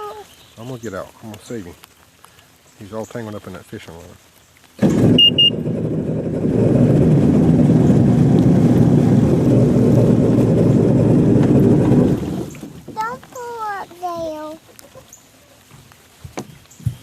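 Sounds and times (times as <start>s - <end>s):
jet ski engine running: 4.8s - 12.9s
short electronic beeps: 5.1s - 5.6s.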